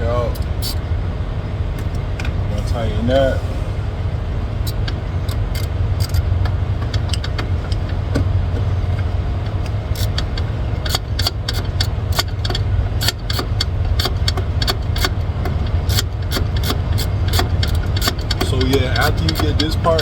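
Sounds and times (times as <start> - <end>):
low engine rumble: 0.0 - 20.0
hand tool metal clicks: 4.7 - 8.0, 9.6 - 20.0.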